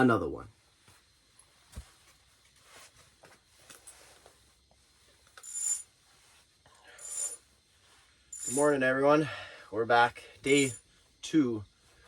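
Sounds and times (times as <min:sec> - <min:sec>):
ringing metal clink: 0:05.4 - 0:05.9, 0:07.0 - 0:07.4, 0:08.3 - 0:08.8, 0:10.5 - 0:10.8.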